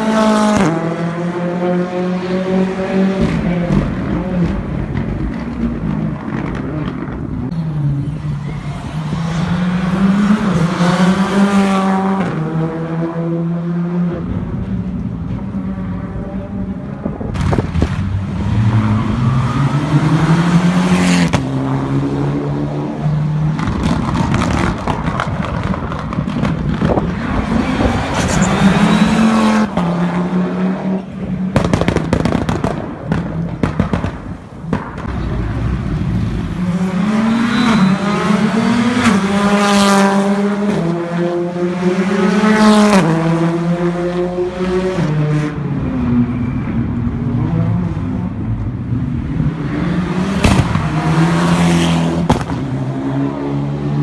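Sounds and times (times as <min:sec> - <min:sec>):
rally car engines revving: 0:00.0 - 0:54.0
exhaust crackles and pops: 0:23.5 - 0:27.3, 0:31.5 - 0:35.6.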